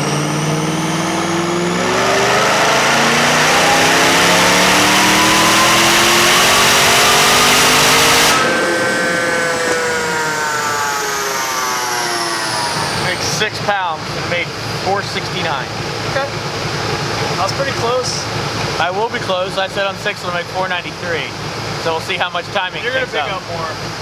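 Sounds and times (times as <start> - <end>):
engine winding down whine: 0.0 - 16.0
engine revving at full throttle: 0.0 - 18.5.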